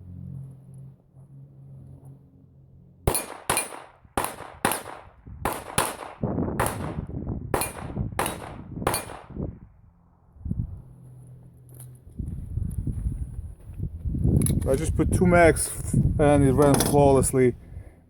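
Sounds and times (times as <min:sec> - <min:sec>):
pistol shots: 0:03.0 - 0:09.4.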